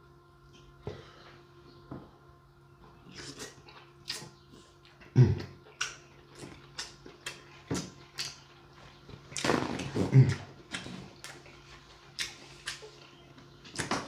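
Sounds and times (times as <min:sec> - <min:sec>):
wet chewing and lip smacks: 0:03.1 - 0:09.5, 0:10.4 - 0:14.0.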